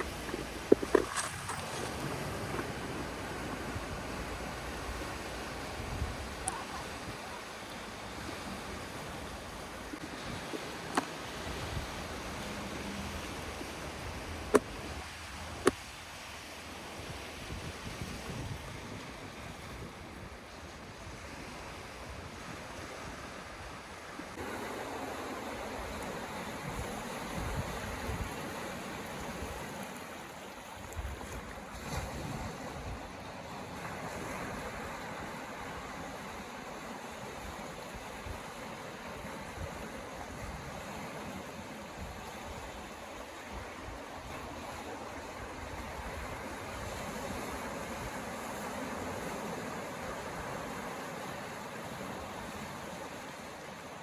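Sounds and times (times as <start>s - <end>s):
wind rumbling on microphone: 0.0s - 7.4s, 8.0s - 29.8s, 30.8s - 36.4s
ocean surf washing: 0.0s - 54.0s.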